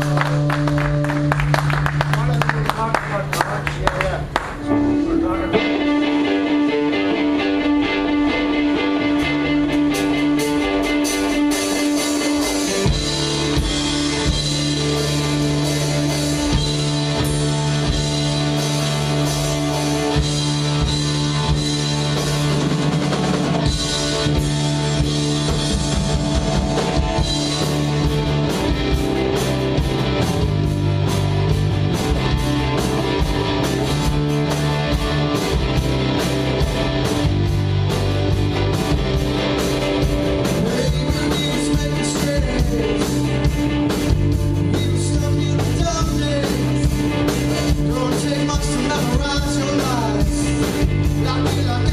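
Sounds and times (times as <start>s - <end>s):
bass line: 0.0s - 51.9s
drum kit: 0.0s - 51.9s
guitar: 0.0s - 51.9s.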